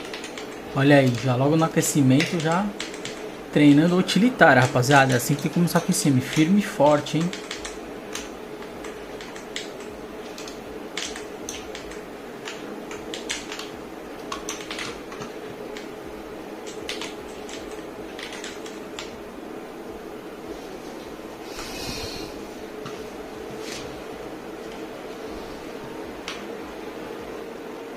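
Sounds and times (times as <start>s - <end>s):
mechanical keyboard clicks: 0.0s - 3.9s, 4.6s - 15.9s, 16.6s - 19.1s
steady low hum: 0.0s - 27.9s.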